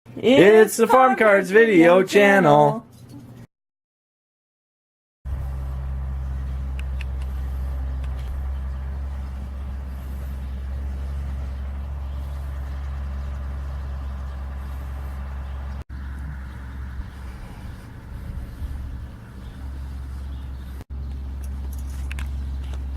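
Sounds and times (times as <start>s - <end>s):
low mechanical drone: 5.3s - 22.9s.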